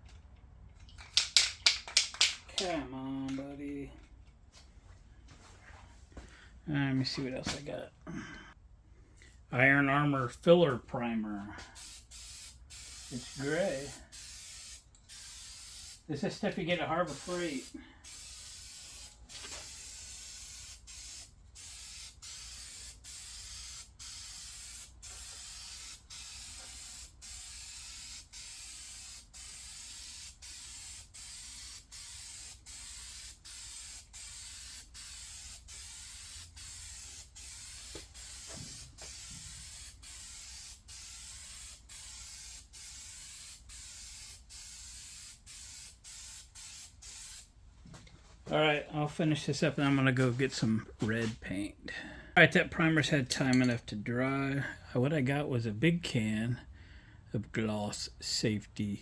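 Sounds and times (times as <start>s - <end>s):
aerosol can spraying: 11.8s - 16.1s, 17.0s - 47.5s.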